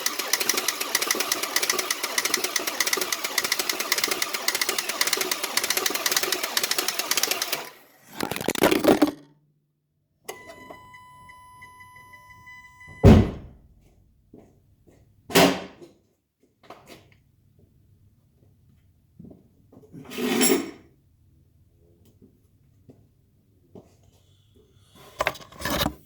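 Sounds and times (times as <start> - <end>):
engine starter cranking: 0.0 - 8.4
heavy thunks: 13.0 - 13.6.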